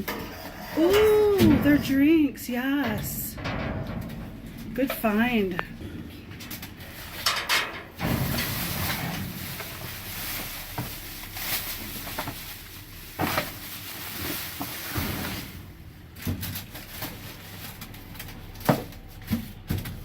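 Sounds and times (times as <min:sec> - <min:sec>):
rustling of boxes: 0:00.0 - 0:20.0
knocks and clunks of items: 0:16.2 - 0:20.0.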